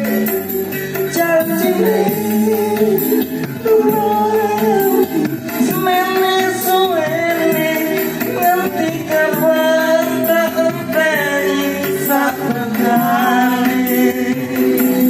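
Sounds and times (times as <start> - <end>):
live band music: 0.0 - 15.0.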